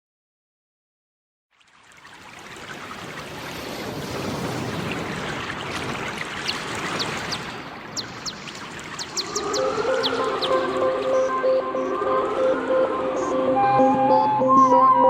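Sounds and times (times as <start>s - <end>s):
stream water flowing: 1.5s - 13.2s
high falling bird chirps: 6.4s - 12.4s.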